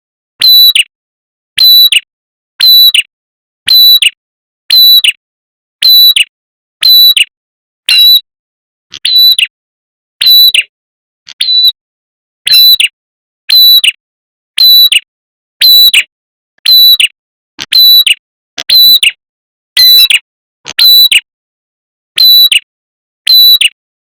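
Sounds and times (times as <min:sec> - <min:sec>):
distorted bird call recording: 0:00.4 - 0:00.9, 0:01.6 - 0:02.0, 0:02.6 - 0:03.1, 0:03.7 - 0:05.2, 0:05.8 - 0:07.3, 0:07.9 - 0:08.3, 0:08.9 - 0:09.6, 0:10.2 - 0:10.7, 0:11.3 - 0:11.8, 0:12.5 - 0:14.0, 0:14.6 - 0:19.2, 0:19.8 - 0:21.3, 0:22.2 - 0:23.8.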